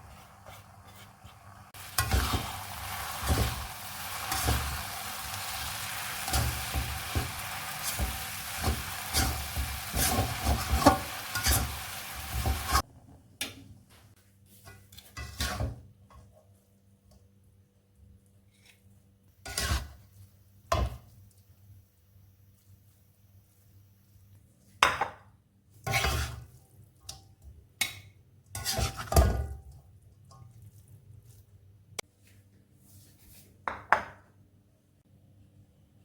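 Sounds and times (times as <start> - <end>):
food sizzling in a pan: 0.0 - 12.8
spatula knocking and scraping pan: 0.0 - 12.8, 14.6 - 15.9, 19.5 - 20.0, 25.8 - 26.5, 28.6 - 29.6.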